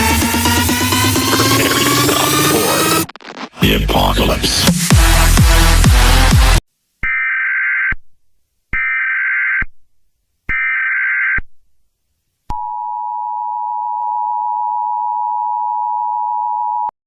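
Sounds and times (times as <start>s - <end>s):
digital data bursts: 0.6s - 5.4s.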